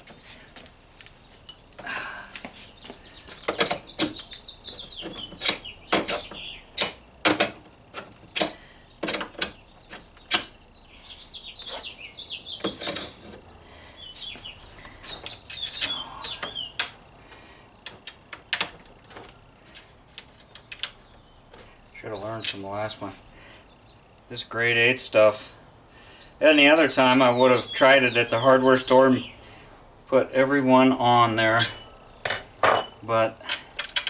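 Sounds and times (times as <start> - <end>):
bird chirping: 2.7 - 7.2, 8.1 - 17.1, 20.5 - 24.2, 26.0 - 33.4
hand tools clicking on metal: 3.3 - 10.6, 15.1 - 17.0, 31.3 - 34.0.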